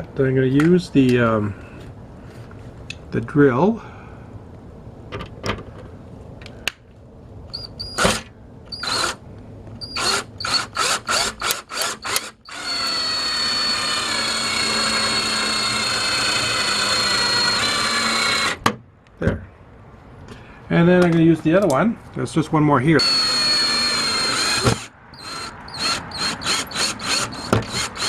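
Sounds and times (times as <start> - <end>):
power drill whining: 7.6 - 9.2, 9.8 - 18.6, 23.0 - 28.0.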